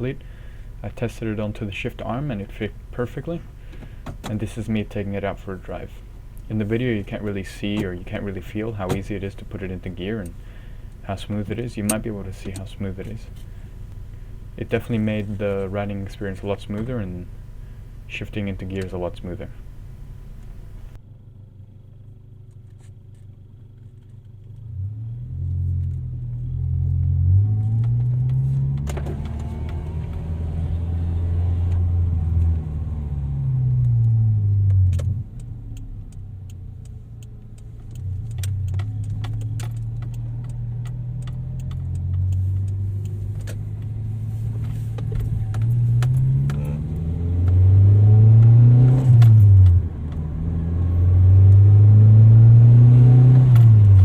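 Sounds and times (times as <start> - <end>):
car engine revving through gears: 24.6 - 54.0
sharp clicks: 33.8 - 43.9.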